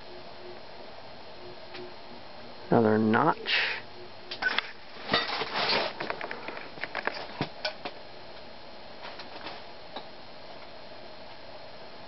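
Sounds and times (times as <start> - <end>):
ceiling fan motor humming: 0.0 - 12.0
clicks and rustles of handling: 4.3 - 8.0.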